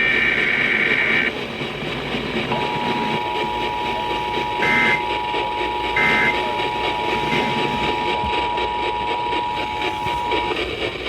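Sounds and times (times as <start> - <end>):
two-tone attention signal: 2.5 - 10.6
screechy digital data bursts: 3.5 - 7.6.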